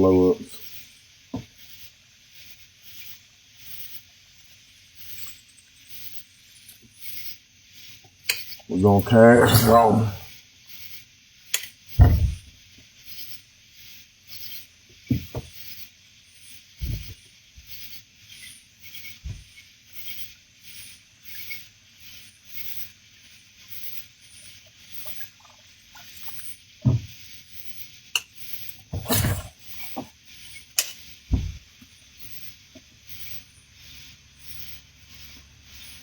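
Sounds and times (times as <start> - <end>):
night insects chorus: 0.0 - 36.0
dull thumps of kayak gear: 12.0 - 12.5, 16.8 - 17.2, 31.3 - 31.7.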